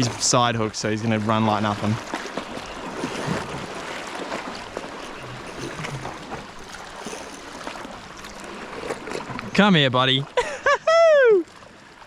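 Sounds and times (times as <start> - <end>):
water trickling: 0.0 - 12.0.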